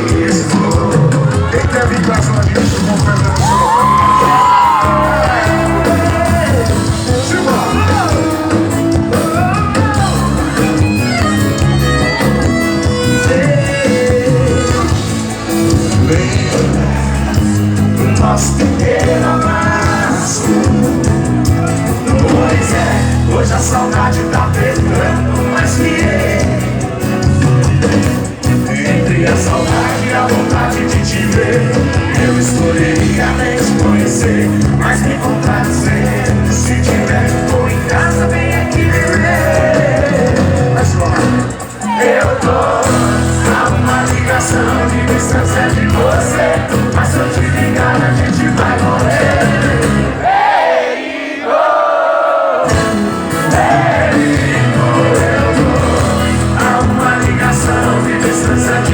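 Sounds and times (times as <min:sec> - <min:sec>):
song with band: 0:00.0 - 0:58.9.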